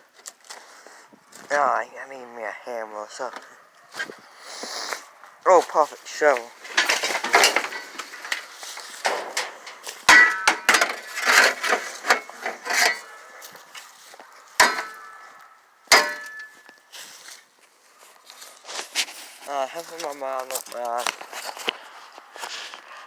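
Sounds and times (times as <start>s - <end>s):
metal clattering: 6.4s - 13.2s, 14.6s - 15.2s, 15.9s - 16.7s
shovel striking sheet metal: 6.7s - 13.2s, 14.6s - 15.2s, 15.9s - 16.6s.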